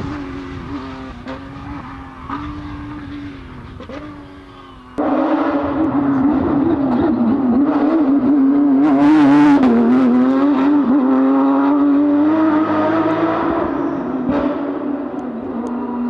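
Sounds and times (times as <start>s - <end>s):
rally car engine running hard: 0.0s - 16.0s.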